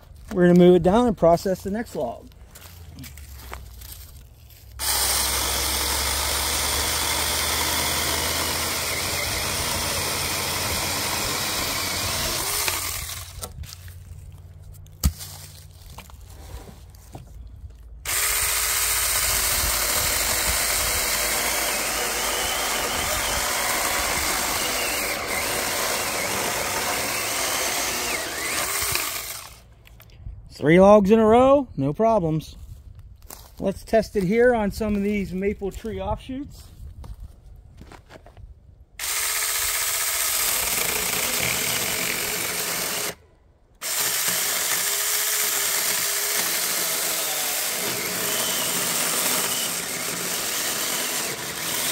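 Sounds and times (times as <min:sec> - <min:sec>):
electric chainsaw cutting logs: 0:04.8 - 0:13.7, 0:18.0 - 0:29.7, 0:39.0 - 0:43.2, 0:43.8 - 0:51.9.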